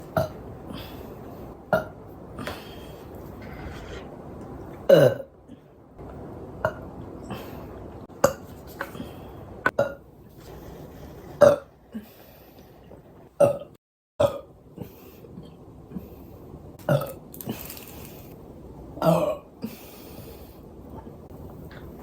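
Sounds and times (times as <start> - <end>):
person burping: 1.7 - 2.0, 4.9 - 5.3, 11.4 - 11.7, 13.4 - 14.5, 16.8 - 17.7, 19.0 - 19.6.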